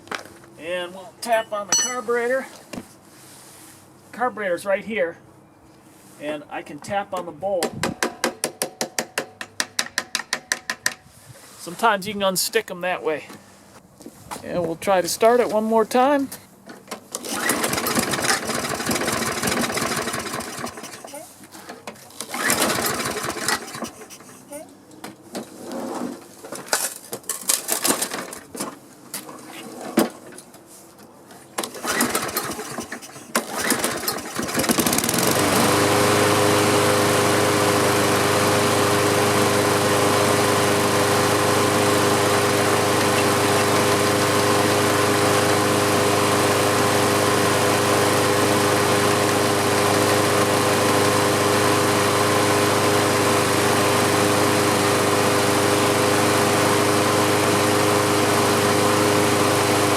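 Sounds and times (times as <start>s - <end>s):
lawn mower engine running: 17.2s - 21.2s, 22.2s - 24.5s, 31.6s - 59.9s
engine knocks and rattles: 17.3s - 21.0s.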